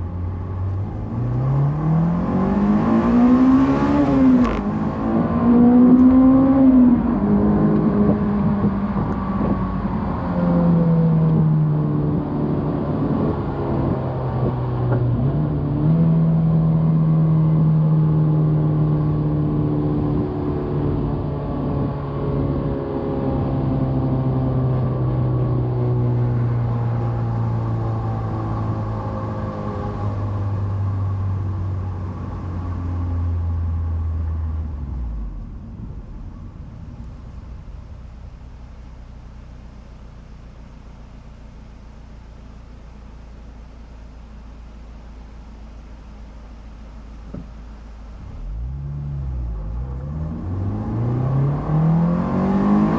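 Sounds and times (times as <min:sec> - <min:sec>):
car engine running: 0:20.7 - 0:51.6.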